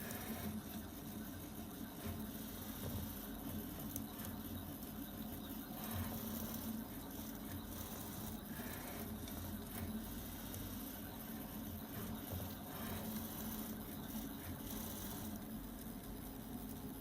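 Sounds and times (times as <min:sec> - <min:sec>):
printer motor hum: 0:00.0 - 0:17.0.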